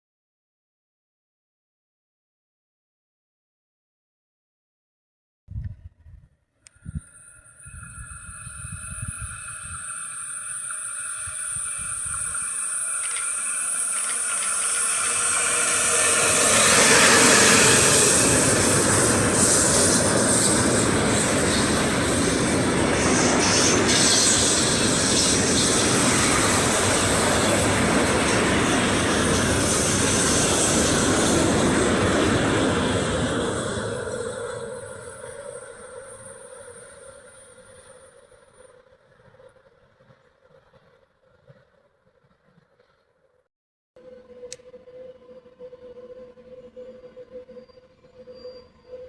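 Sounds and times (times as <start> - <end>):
freight train passing: 7.0 - 43.2.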